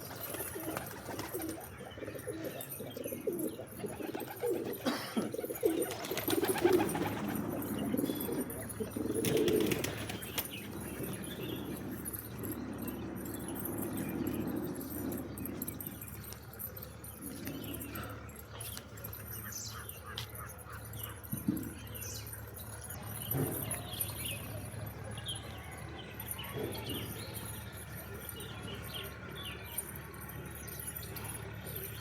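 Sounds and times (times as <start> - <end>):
wings flapping: 0.0 - 1.8, 5.4 - 8.0, 9.1 - 10.8
pigeons cooing: 0.0 - 19.5.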